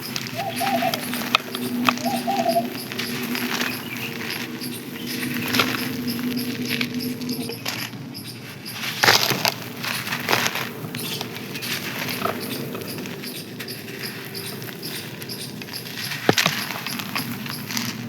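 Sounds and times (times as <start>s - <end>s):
dry sand crunching and crumbling: 0.0s - 18.0s.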